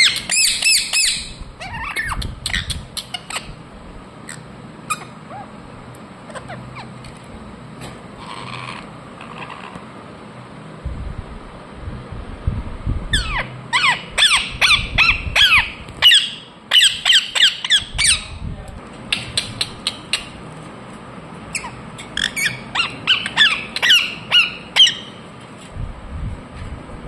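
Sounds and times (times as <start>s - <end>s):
parrot squawking: 0.0s - 3.6s, 4.2s - 5.6s, 6.2s - 7.0s, 8.2s - 9.8s, 13.1s - 18.3s, 21.5s - 25.2s.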